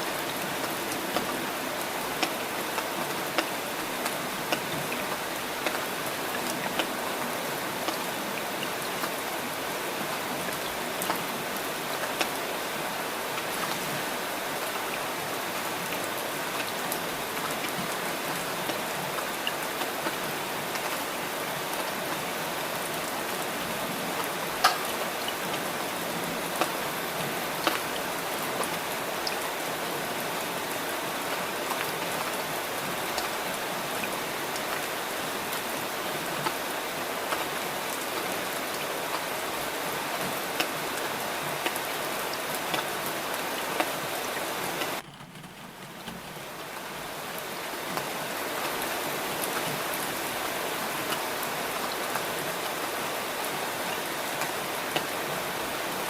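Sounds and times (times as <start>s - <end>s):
steady rain hiss: 0.0s - 56.0s
raindrops ticking: 44.8s - 48.7s.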